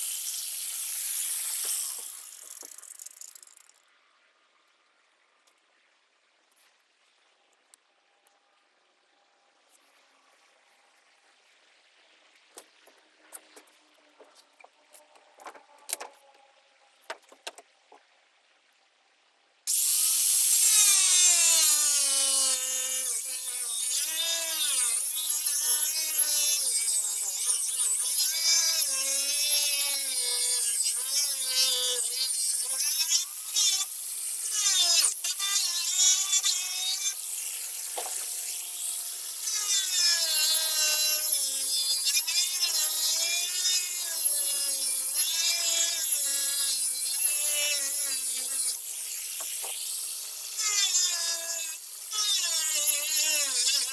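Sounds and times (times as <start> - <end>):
power tool cutting: 0.0 - 3.4, 19.7 - 53.9.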